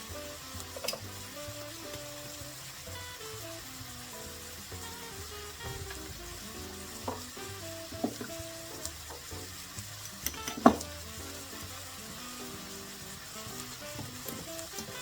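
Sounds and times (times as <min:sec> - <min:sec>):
food sizzling in a pan: 0:00.0 - 0:15.0
stirring knocks in a pan: 0:00.2 - 0:15.0.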